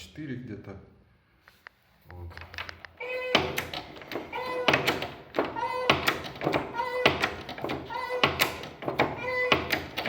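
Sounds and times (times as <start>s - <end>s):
hand pump squeak and knock: 3.0s - 10.0s.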